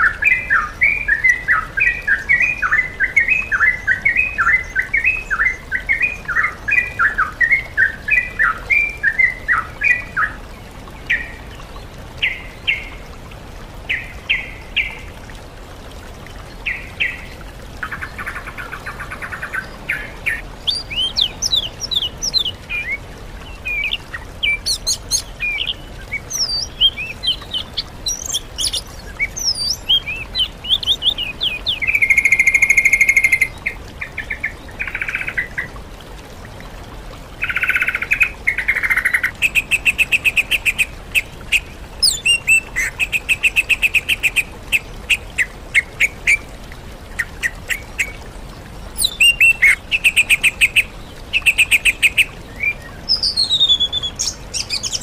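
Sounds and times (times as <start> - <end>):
songbird chattering: 23.7 - 33.5.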